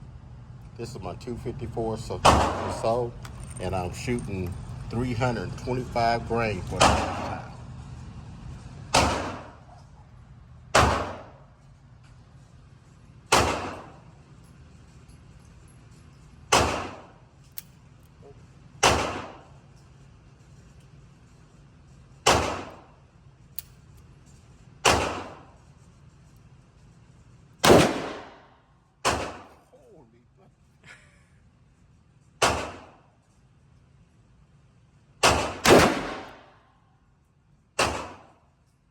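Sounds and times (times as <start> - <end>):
revolver gunshots: 6.8 - 7.4, 8.9 - 9.6, 10.8 - 11.4, 13.3 - 14.0, 16.5 - 17.2, 18.8 - 19.4, 22.3 - 22.8, 24.8 - 25.4, 27.6 - 28.4, 35.2 - 36.5.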